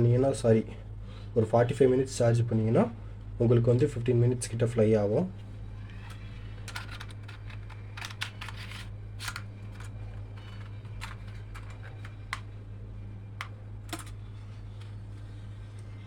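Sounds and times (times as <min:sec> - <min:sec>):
steady low hum: 0:00.0 - 0:16.0
plastic clicks and handling: 0:06.0 - 0:12.5, 0:13.4 - 0:14.2.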